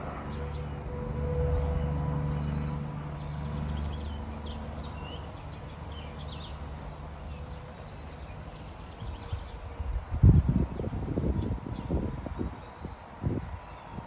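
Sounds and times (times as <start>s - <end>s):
low motor hum: 0.0s - 14.0s
small birds chirping: 2.5s - 9.8s.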